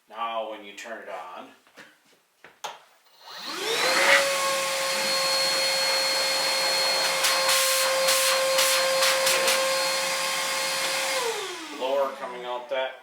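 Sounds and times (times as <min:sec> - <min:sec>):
vacuum motor whining: 0:03.2 - 0:12.7.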